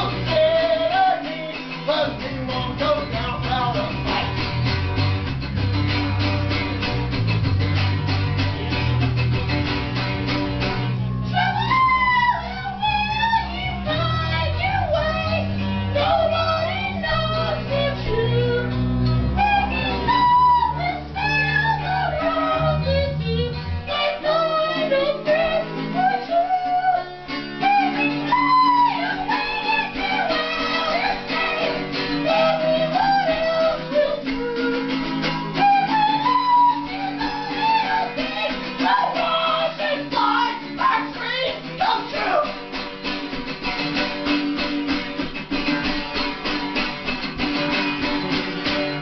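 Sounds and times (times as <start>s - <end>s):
live band playing: 0.0s - 49.0s
high voice singing: 11.3s - 35.0s, 35.6s - 42.5s.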